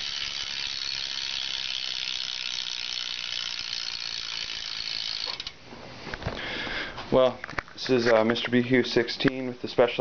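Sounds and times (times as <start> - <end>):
bike hub ratcheting buzz: 0.0 - 5.6.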